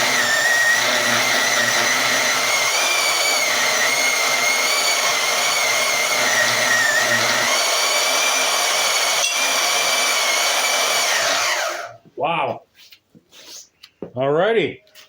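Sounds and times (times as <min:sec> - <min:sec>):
band saw cutting steel: 0:00.0 - 0:11.9.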